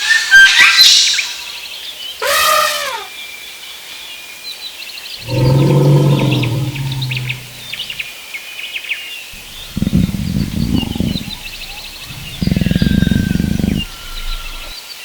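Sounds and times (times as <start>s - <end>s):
low steady animal call: 5.2s - 8.0s, 9.4s - 14.8s
rise-and-fall animal call: 5.2s - 8.0s, 9.4s - 14.7s.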